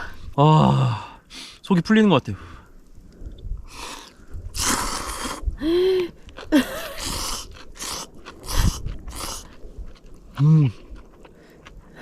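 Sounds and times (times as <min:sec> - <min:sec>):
noodles slurped: 0:03.7 - 0:05.5, 0:06.3 - 0:11.1.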